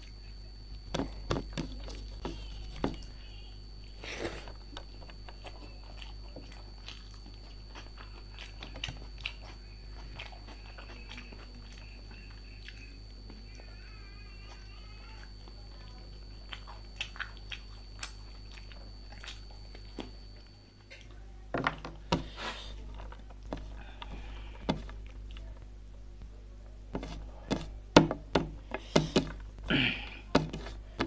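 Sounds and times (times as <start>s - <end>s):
low electrical hum: 0.0s - 31.0s
person chewing with mouth clicks: 4.2s - 13.6s, 16.2s - 20.2s.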